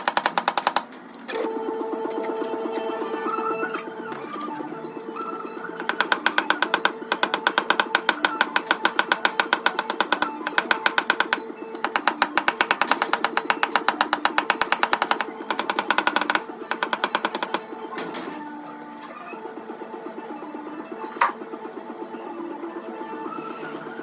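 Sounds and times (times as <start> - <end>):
background music: 0.0 - 24.0
metal tool tapping sheet metal: 5.8 - 17.6.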